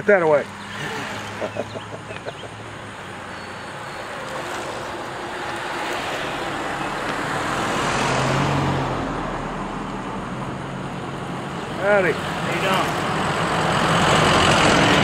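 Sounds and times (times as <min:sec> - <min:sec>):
vehicle passing on road: 0:00.2 - 0:15.0.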